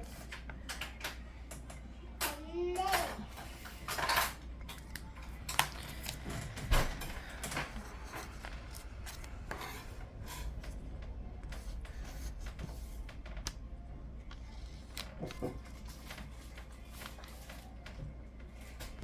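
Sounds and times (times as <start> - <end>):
paper rustling: 4.8 - 10.8, 14.3 - 19.0.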